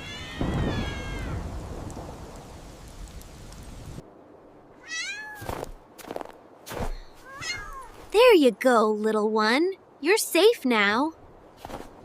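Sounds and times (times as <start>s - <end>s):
cat meowing: 0.0s - 1.4s, 4.8s - 5.5s, 7.2s - 7.9s
snowstorm wind: 0.0s - 12.0s.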